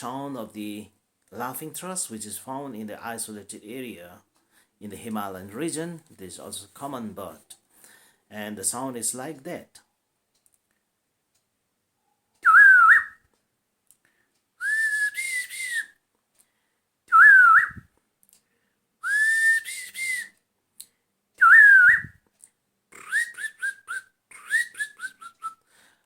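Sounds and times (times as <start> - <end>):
person whistling bird call: 12.4 - 13.2, 14.6 - 16.0, 17.1 - 17.9, 19.0 - 20.4, 21.4 - 22.2, 23.0 - 25.6.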